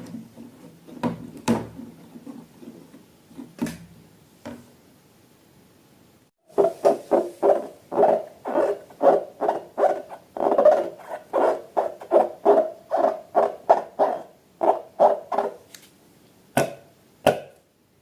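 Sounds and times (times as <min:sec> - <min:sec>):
slime squelching: 0:06.5 - 0:15.6.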